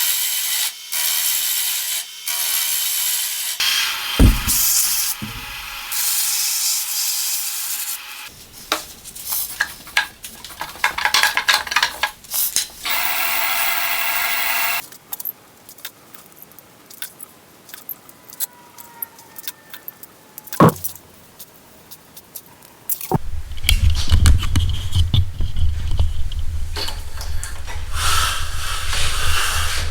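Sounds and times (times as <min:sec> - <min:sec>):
sharp knock: 0:04.2 - 0:05.9
hissing scraping and rubbing: 0:08.3 - 0:12.9, 0:23.1 - 0:29.9.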